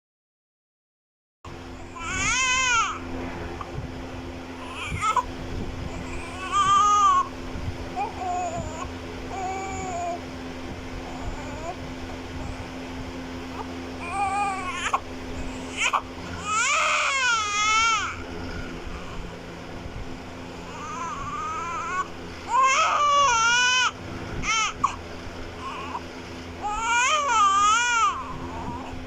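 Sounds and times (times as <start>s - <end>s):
baby crying: 1.9s - 3.0s, 4.6s - 5.3s, 5.9s - 7.3s, 8.0s - 10.2s, 11.0s - 11.8s, 13.5s - 18.2s, 20.6s - 25.0s, 25.6s - 26.0s, 26.6s - 28.9s.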